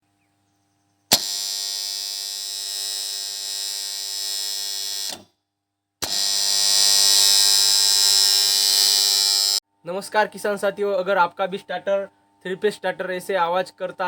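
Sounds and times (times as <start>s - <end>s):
contactor buzzing with mains hum: 0.2s - 5.4s, 6.0s - 9.7s
contactor click: 5.0s - 5.3s, 6.0s - 7.3s.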